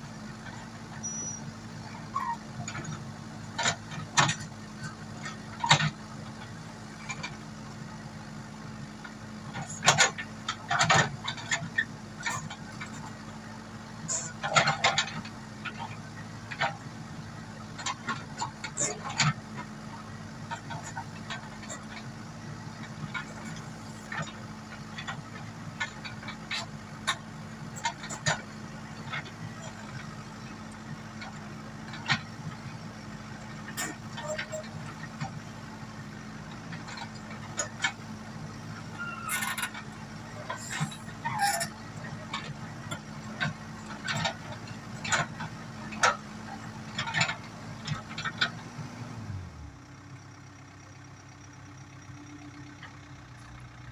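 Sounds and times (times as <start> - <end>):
diesel engine running: 0.0 - 53.9.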